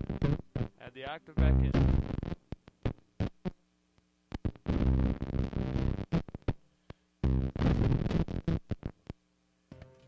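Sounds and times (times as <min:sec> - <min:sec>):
heavily distorted music: 0:01.4 - 0:02.4.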